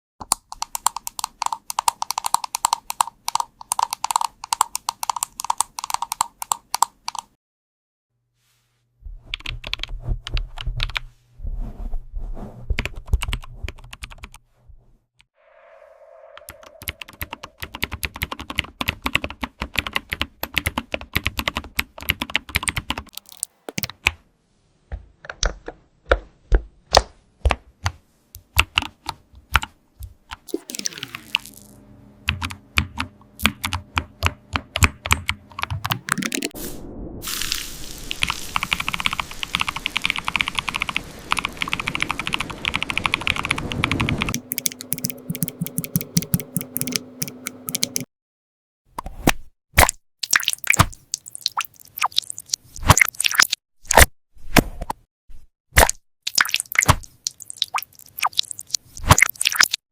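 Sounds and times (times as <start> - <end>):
typing on keyboards: 0.2 - 7.3, 16.9 - 23.9, 38.2 - 48.1
brief hum: 15.4 - 17.7.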